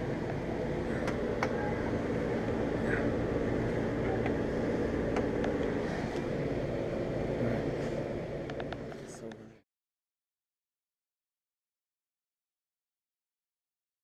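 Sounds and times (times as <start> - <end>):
air conditioner hum: 0.0 - 9.6.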